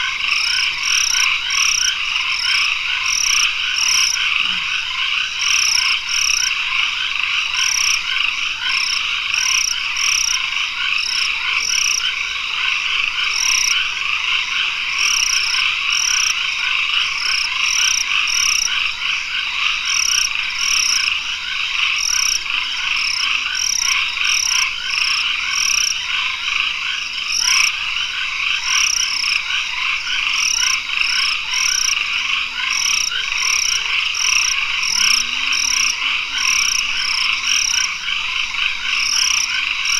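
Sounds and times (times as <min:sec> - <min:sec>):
short high-pitched frog calls: 0:00.0 - 0:12.7, 0:21.8 - 0:39.9
frogs trilling: 0:00.0 - 0:39.9.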